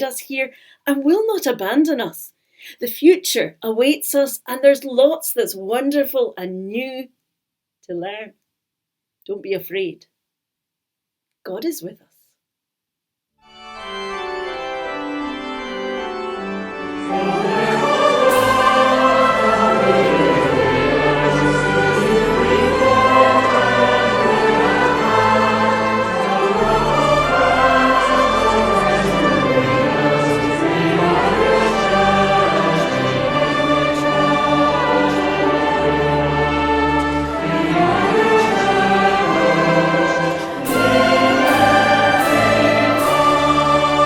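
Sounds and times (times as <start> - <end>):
choir singing with instruments: 13.8 - 44.0.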